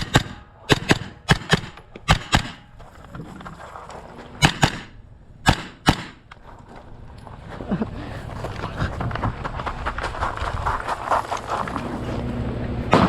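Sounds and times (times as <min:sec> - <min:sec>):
gunshots: 0:00.0 - 0:02.7, 0:04.4 - 0:06.3.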